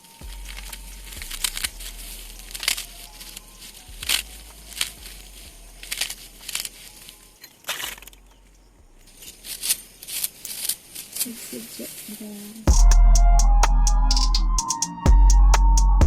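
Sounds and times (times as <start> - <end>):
dry plant stalks crackling: 0.0 - 12.7
faint low hum: 0.0 - 13.3.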